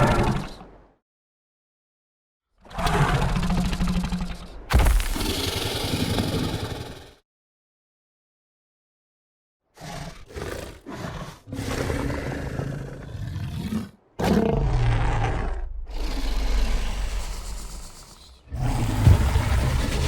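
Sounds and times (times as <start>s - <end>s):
dinosaur growls and roars: 0.0s - 0.9s, 2.6s - 7.2s, 9.7s - 20.0s.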